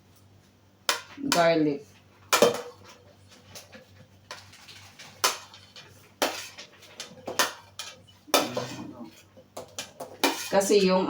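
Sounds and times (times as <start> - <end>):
food clattering against container: 2.4 - 8.8.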